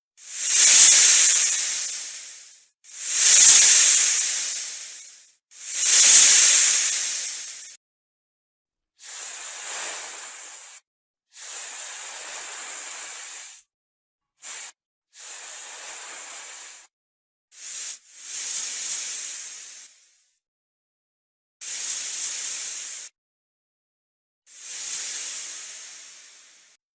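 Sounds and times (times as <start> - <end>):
snake hissing: 0.2 - 7.8, 9.0 - 10.8, 11.4 - 13.7, 14.4 - 16.9, 17.6 - 20.1, 21.6 - 23.1, 24.5 - 26.8.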